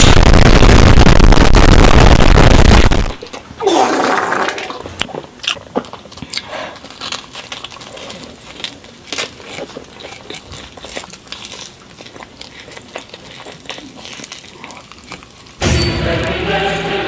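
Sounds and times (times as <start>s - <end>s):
loud noisy sound: 0.0s - 4.8s, 15.6s - 17.0s
biting and chewing pizza: 2.9s - 17.0s.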